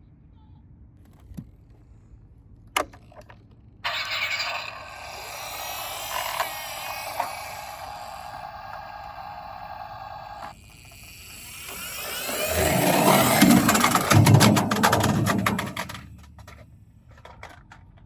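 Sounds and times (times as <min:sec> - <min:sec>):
thin vehicle sound effect: 0:03.9 - 0:16.6.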